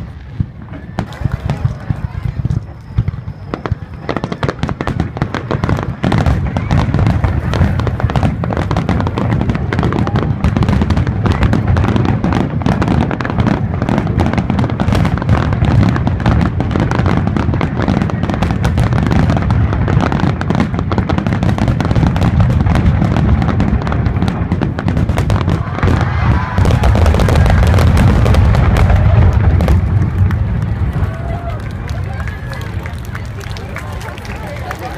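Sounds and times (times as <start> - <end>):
fireworks bursting: 0.0 - 34.9.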